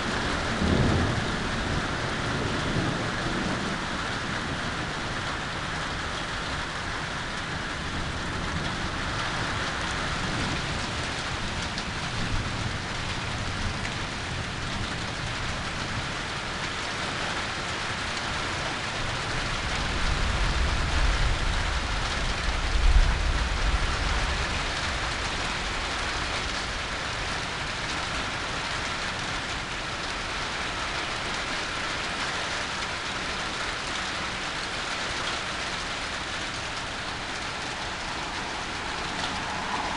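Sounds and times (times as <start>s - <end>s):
thunder rolling: 0.0s - 6.7s, 35.8s - 39.9s
steady rain falling: 0.0s - 39.9s.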